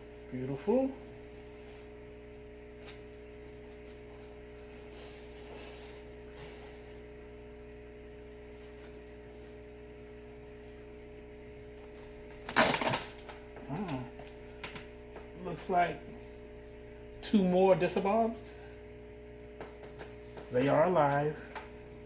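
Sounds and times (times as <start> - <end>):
steady hum: 0.0 - 22.0
packaging crinkling and rustling: 12.4 - 13.3.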